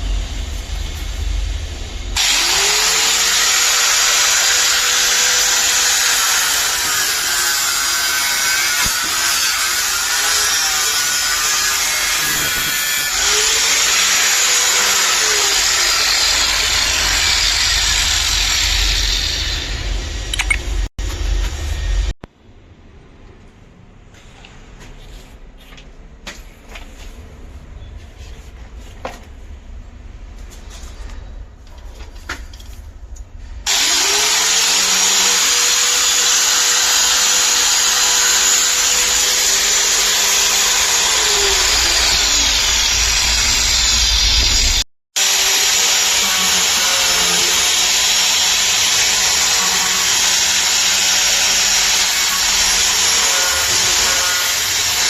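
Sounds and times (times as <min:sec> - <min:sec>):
electric power drill running: 0:02.2 - 0:20.0, 0:33.7 - 0:55.0.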